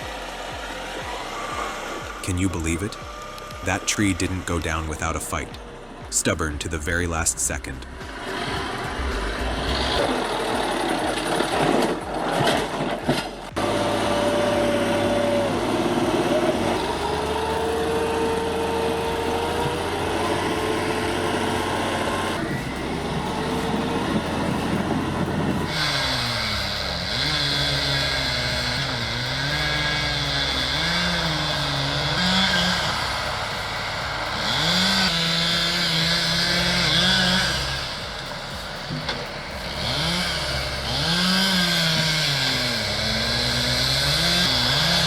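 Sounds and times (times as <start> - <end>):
engine running: 0.0 - 45.0.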